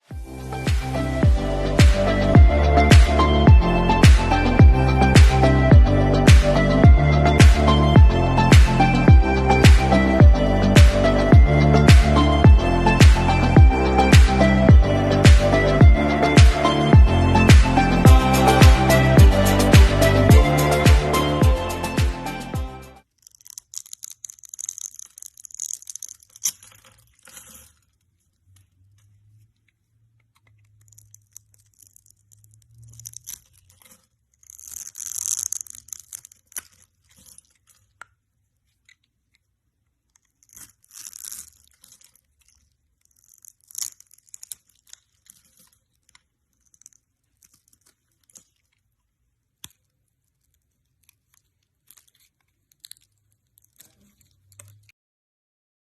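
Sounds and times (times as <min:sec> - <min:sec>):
fidget toys crackling: 0:23.0 - 0:54.9.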